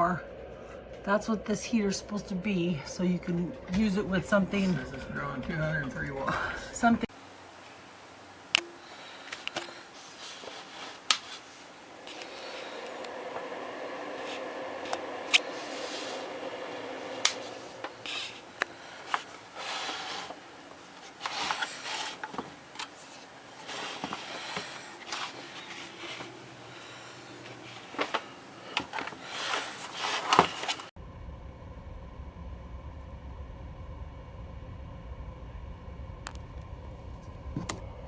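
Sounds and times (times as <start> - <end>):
faint steady hum: 0.0 - 28.8, 31.0 - 38.0
rustling and scraping: 9.0 - 30.9.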